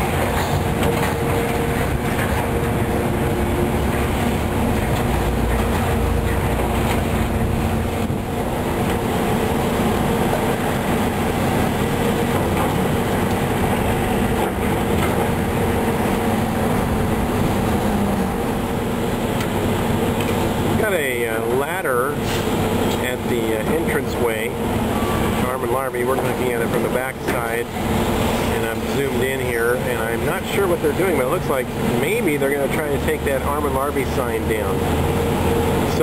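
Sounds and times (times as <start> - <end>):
machinery engine drone: 0.0 - 36.0.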